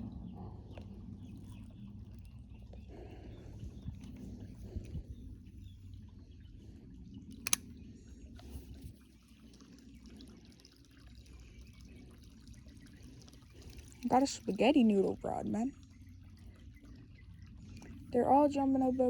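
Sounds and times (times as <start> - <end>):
creek water trickling: 0.0 - 19.0
sharp click: 7.4 - 7.7.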